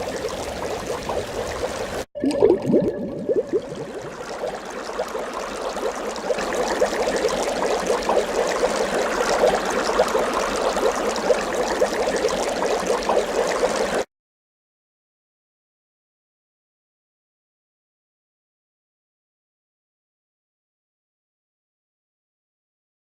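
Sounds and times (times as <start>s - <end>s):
brook water babbling: 0.0s - 2.1s, 3.1s - 14.1s.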